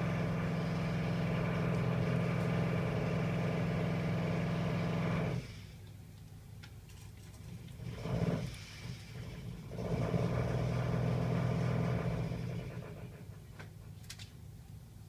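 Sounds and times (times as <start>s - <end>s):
jackhammer pounding: 0.0s - 5.6s, 7.8s - 13.4s.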